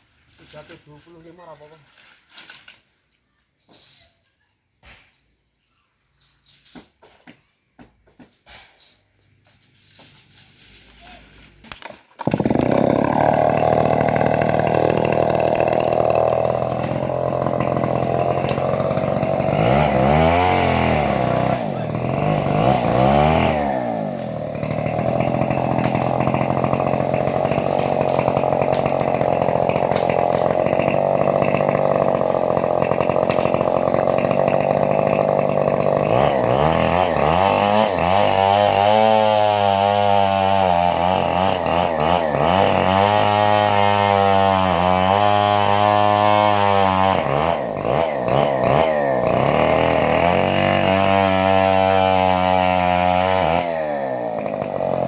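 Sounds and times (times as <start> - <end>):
bandsaw cutting wood: 11.0 - 55.0.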